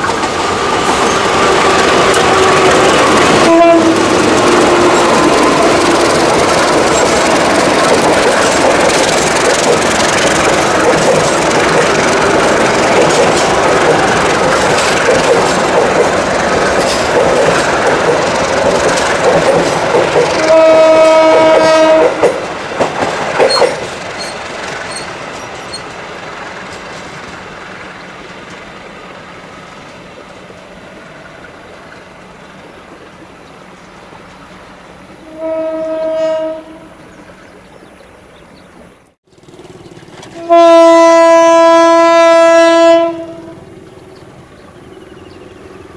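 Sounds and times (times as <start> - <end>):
train wheels clattering over rail joints: 0.0 - 34.8, 39.3 - 45.9
train rumble: 0.0 - 45.9
locomotive horn blast: 1.6 - 6.3, 20.3 - 22.4, 35.2 - 37.1, 40.3 - 43.7.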